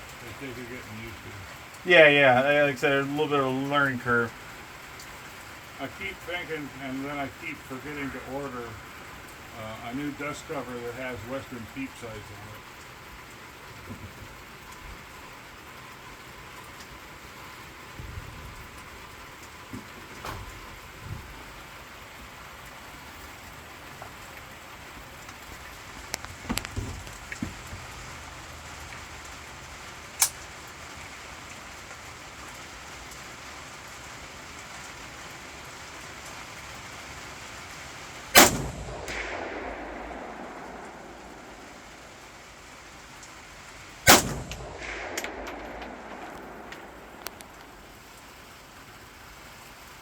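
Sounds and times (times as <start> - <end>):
steady hiss: 0.0 - 50.0
faint clicks and knocks: 24.0 - 28.2, 44.4 - 47.9
rifle shot: 38.3 - 42.8, 44.0 - 48.0.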